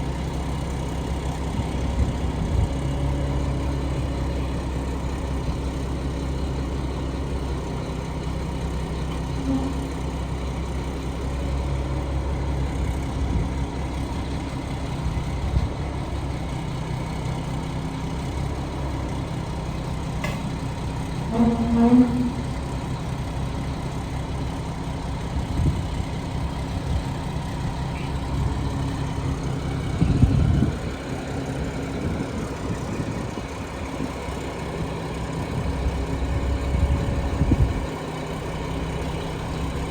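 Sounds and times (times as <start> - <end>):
engine idling: 0.0 - 39.9
short pitched tone: 21.3 - 22.5.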